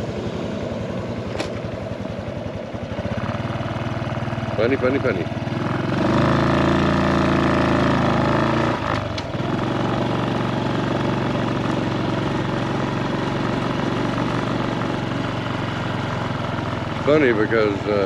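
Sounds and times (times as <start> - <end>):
small motorcycle engine idling: 0.0 - 18.0.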